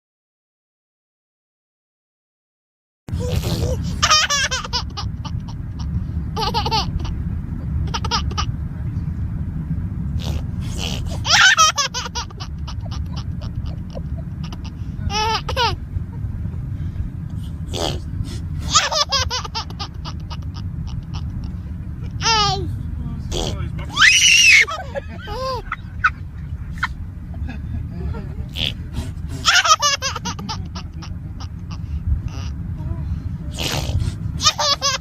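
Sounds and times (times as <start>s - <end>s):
low background hum: 3.1s - 35.0s
baby giggling: 3.2s - 7.2s, 7.8s - 8.5s, 10.2s - 15.8s, 17.6s - 21.5s, 22.1s - 22.7s, 23.3s - 32.6s, 33.5s - 35.0s.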